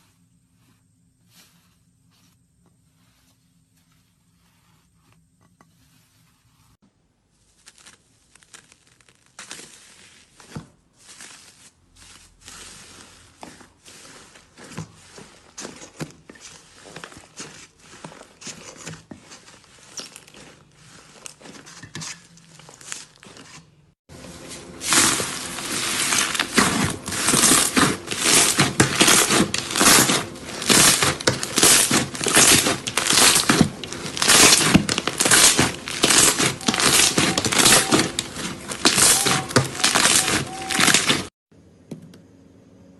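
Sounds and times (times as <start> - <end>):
slime crackling and popping: 7.4 - 11.6, 24.7 - 41.3.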